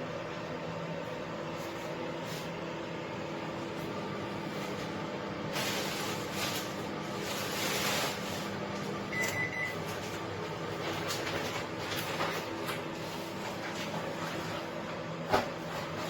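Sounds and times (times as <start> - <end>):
microwave oven humming: 0.0 - 16.0.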